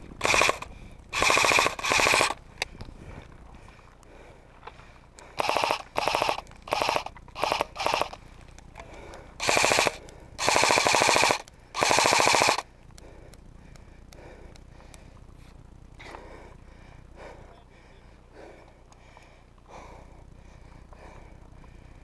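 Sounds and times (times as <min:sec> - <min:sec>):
airsoft rifle firing bursts: 0:00.2 - 0:02.4, 0:05.4 - 0:08.2, 0:09.4 - 0:12.7.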